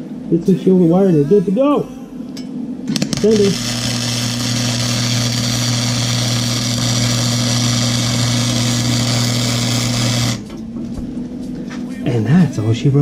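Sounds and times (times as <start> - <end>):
low electrical hum: 0.0 - 13.0
welder arc crackling hiss: 2.9 - 10.6.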